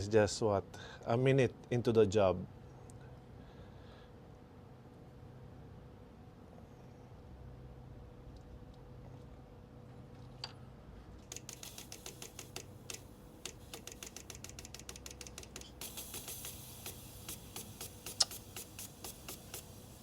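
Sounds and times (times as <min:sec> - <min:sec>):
fuel injector solenoid clicking: 0:11.3 - 0:20.0
steady hiss: 0:11.3 - 0:20.0.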